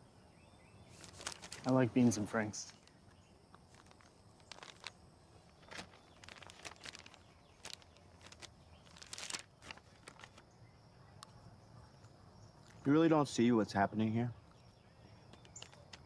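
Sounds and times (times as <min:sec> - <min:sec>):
ration pouches rustling and clicking: 0:00.9 - 0:10.5, 0:14.4 - 0:16.0.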